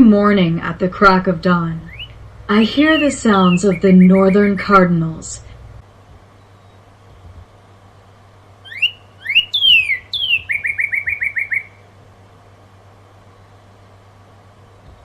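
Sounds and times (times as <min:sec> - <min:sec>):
cardinal singing whistles: 0:08.7 - 0:11.8.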